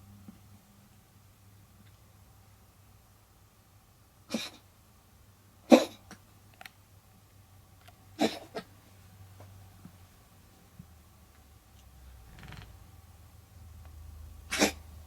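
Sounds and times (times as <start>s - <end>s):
cat coughing: 4.3s - 4.6s, 5.6s - 6.1s, 8.2s - 8.7s, 14.5s - 14.9s.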